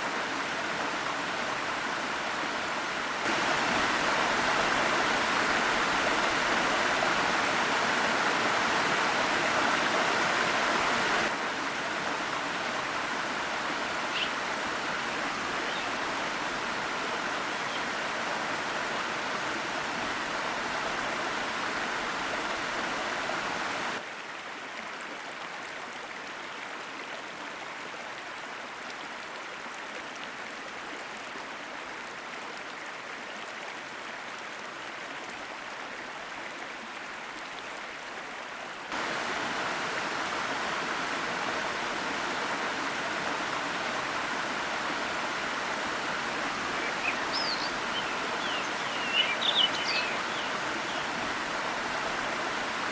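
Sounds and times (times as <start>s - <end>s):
waterfall rushing: 0.0s - 24.0s, 38.9s - 52.9s.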